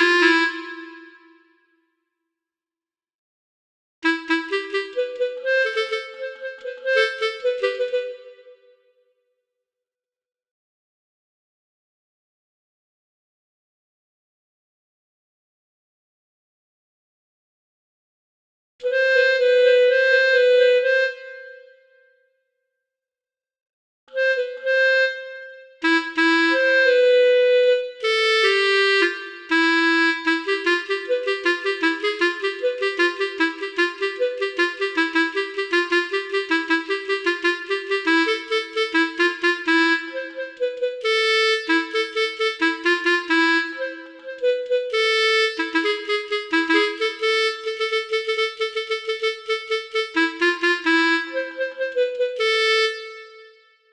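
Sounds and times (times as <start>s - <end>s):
multi-trumpet bus horn melody: 4.0s - 8.5s, 24.2s - 53.9s.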